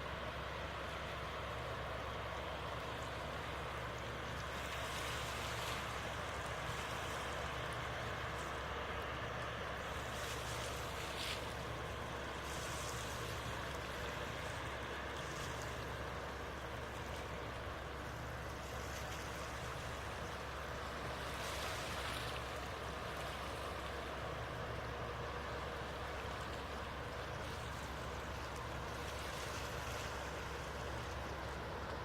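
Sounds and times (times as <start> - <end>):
rushing water wash: 0.0 - 32.0
ship engine rumble: 0.0 - 32.0.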